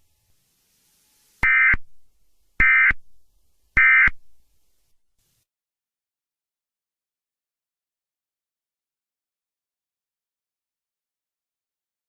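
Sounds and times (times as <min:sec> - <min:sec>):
digital data tone bursts: 0:01.4 - 0:01.8.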